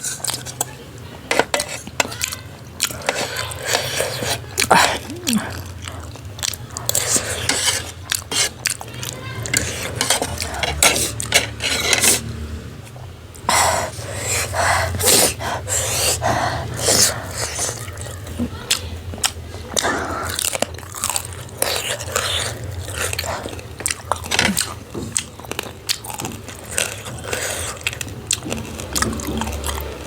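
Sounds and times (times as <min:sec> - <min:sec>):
chewing and mouth noises: 0:00.0 - 0:30.0
utensils clicking against dish: 0:06.4 - 0:12.3.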